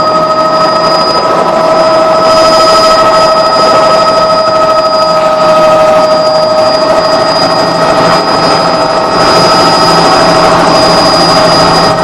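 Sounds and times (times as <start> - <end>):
helicopter engine and rotor: 0.0 - 12.0
high whine: 0.0 - 12.0.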